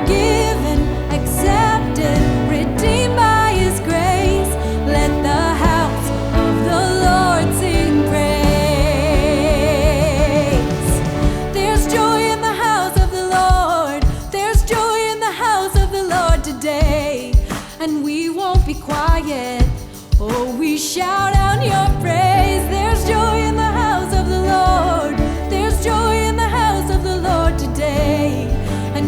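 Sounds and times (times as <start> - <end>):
steady low bass: 0.0 - 11.9, 21.4 - 29.0
sung melody: 0.0 - 14.5, 21.2 - 29.0
drum strikes: 0.0 - 29.0.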